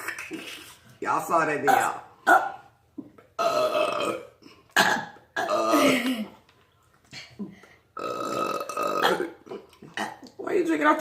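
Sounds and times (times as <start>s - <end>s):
people burping: 3.4s - 6.4s, 7.4s - 10.4s.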